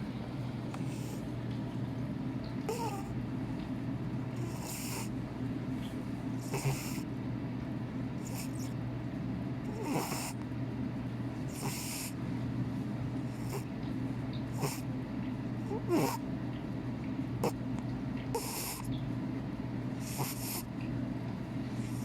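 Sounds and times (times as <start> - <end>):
steady low hum: 0.0 - 22.0
cat snoring: 0.8 - 1.2, 2.7 - 3.1, 4.4 - 5.1, 6.4 - 7.1, 8.2 - 8.8, 9.7 - 10.4, 11.5 - 12.2, 13.3 - 13.7, 14.6 - 14.8, 15.7 - 16.2, 18.3 - 18.9, 20.0 - 20.7.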